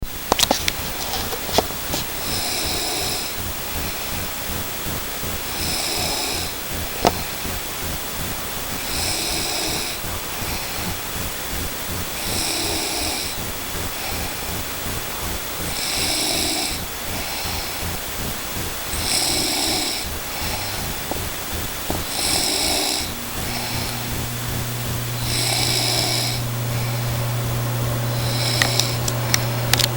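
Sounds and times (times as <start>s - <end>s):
person snoring: 19.0s - 29.0s.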